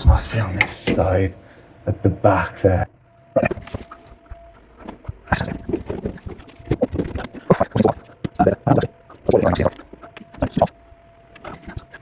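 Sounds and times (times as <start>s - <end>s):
knocks and clattering in cupboard: 0.0s - 1.2s.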